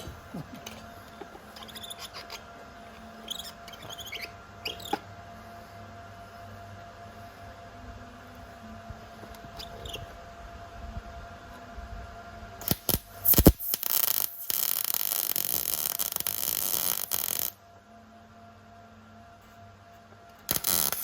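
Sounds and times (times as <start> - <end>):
electric arc welding crackling: 12.6 - 17.6, 20.5 - 21.0.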